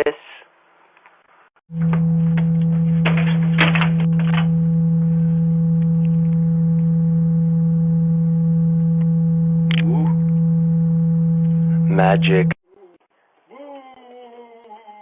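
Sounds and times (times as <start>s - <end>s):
loud electrical hum: 1.7s - 12.6s.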